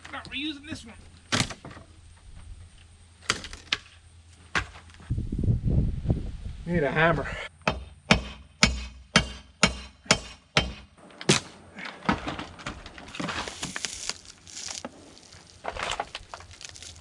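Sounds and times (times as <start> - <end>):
hammer striking wood: 7.7 - 11.5
wood cracking and splintering: 11.2 - 17.0.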